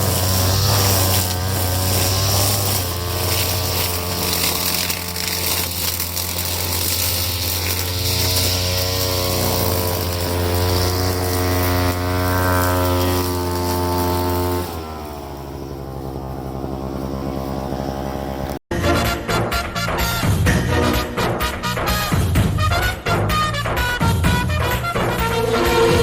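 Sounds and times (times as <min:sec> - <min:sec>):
brushcutter engine revving: 0:00.0 - 0:18.7.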